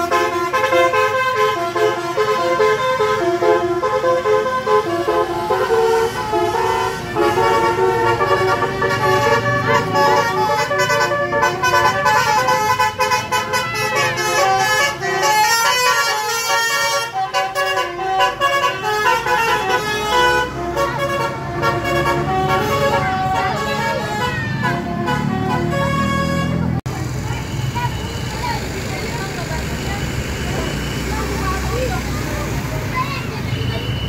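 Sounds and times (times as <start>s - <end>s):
multi-tone bus horn tune: 0.0s - 26.9s.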